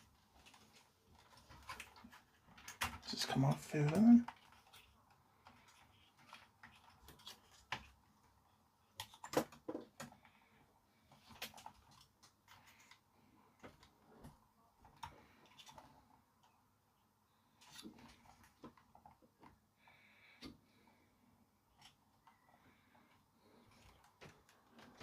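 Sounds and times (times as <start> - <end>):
small parts clicking and tapping: 0.3 - 10.3.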